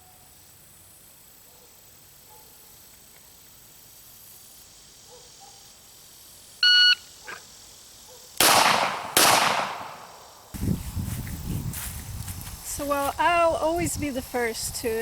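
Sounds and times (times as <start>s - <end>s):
pistol shots: 8.4s - 10.2s.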